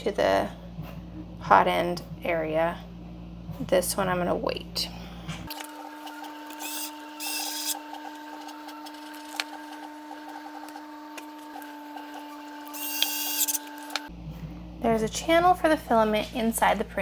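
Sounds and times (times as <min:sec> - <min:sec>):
machine humming: 0:05.4 - 0:14.6
high hissing whir: 0:05.5 - 0:14.1.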